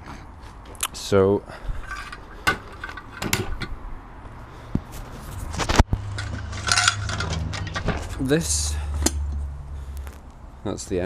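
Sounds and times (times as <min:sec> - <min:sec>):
metal pipes clinking and knocking: 0:01.7 - 0:03.8, 0:06.0 - 0:09.4.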